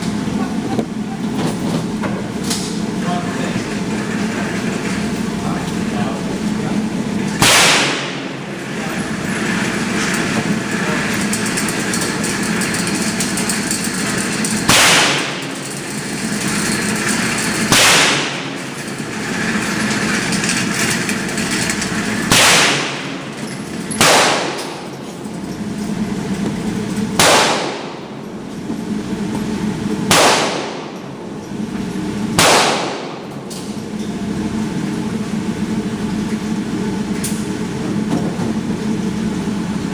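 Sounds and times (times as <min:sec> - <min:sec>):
rifle shots: 0:07.4 - 0:08.3, 0:14.7 - 0:15.6, 0:17.7 - 0:18.5, 0:22.3 - 0:23.2, 0:24.0 - 0:24.8, 0:27.2 - 0:28.0, 0:30.1 - 0:30.9, 0:32.4 - 0:33.3.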